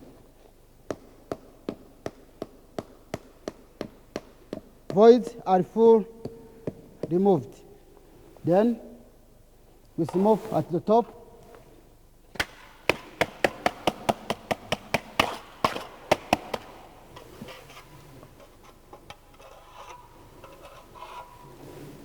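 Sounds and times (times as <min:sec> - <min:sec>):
tool scraping concrete: 0:14.9 - 0:22.0.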